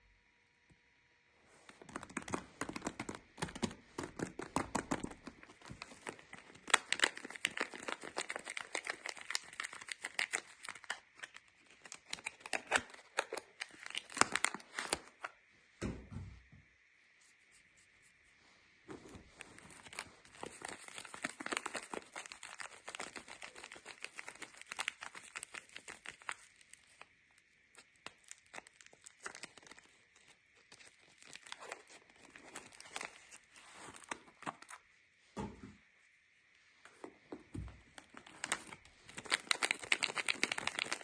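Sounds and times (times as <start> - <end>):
wrapper crinkling and tearing: 1.7 - 15.3, 19.2 - 34.8, 38.0 - 41.0.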